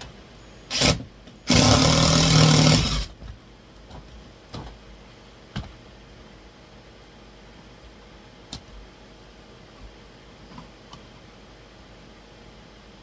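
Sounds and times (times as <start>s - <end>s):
power drill driving screw: 0.7s - 3.1s.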